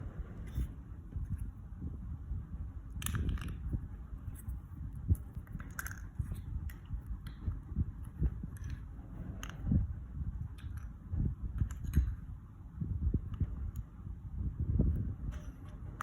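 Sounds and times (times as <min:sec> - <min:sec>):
low rumble: 0:00.0 - 0:16.0
plastic bricks clicking together: 0:05.4 - 0:07.4.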